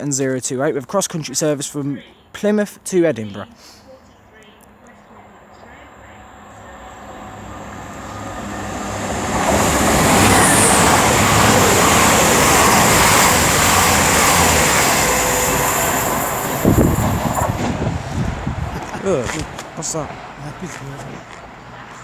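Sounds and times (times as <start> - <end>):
diesel train passing: 5.0 - 22.0.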